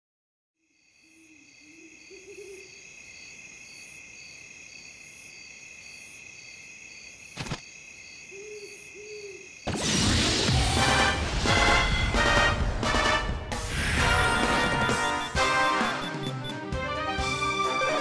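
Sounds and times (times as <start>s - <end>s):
cricket chirping: 0.6s - 10.4s
insect chorus: 0.6s - 10.5s
owl hooting: 1.2s - 2.8s, 8.3s - 9.5s
music: 10.5s - 18.0s.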